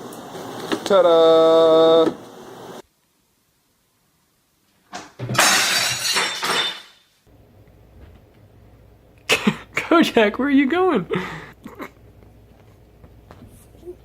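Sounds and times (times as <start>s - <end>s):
glass shattering crash: 5.2s - 7.1s.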